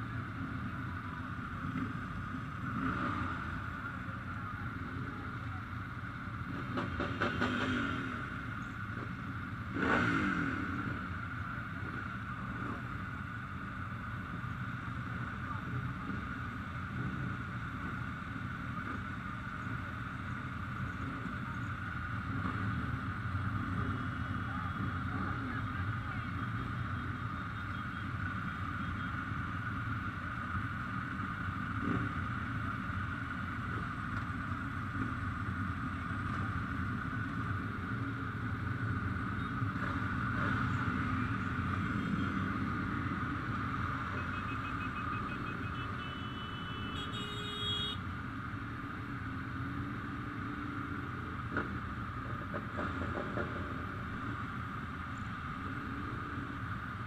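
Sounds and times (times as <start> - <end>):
motorcycles running: 0.0 - 57.0
people's voices: 3.3 - 7.5, 23.6 - 29.6.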